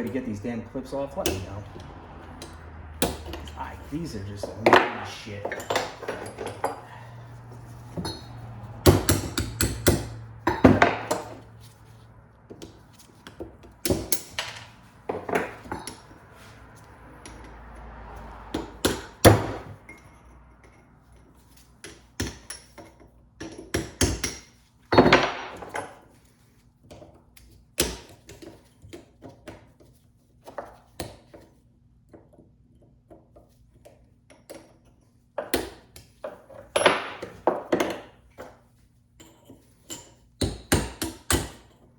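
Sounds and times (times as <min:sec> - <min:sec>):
hammer striking metal chisel: 0:08.1 - 0:11.4, 0:39.8 - 0:41.8.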